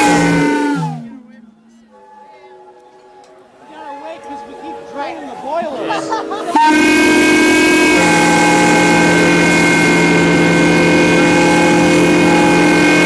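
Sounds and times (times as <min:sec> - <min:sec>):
steam whistles chord: 0:00.0 - 0:03.3, 0:06.3 - 0:13.0.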